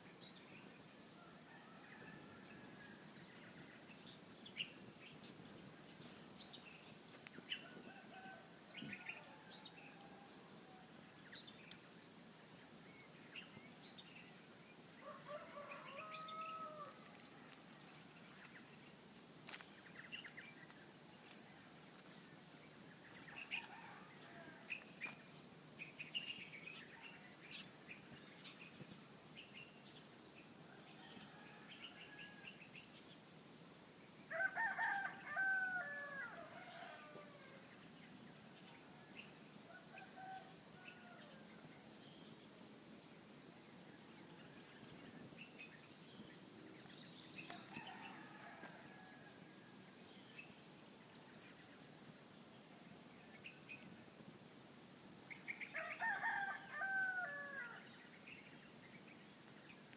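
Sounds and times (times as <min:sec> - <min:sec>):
rooster crowing: 0:07.6 - 0:10.8, 0:15.0 - 0:17.2, 0:30.7 - 0:32.4, 0:34.3 - 0:37.6, 0:47.5 - 0:49.8, 0:55.8 - 0:57.8.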